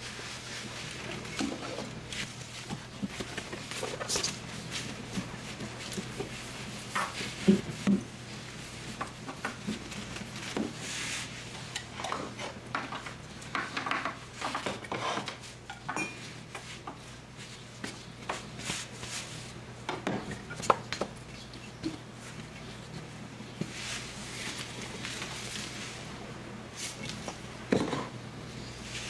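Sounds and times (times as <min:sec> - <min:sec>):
utensils and dishes clinking: 0:11.5 - 0:16.6.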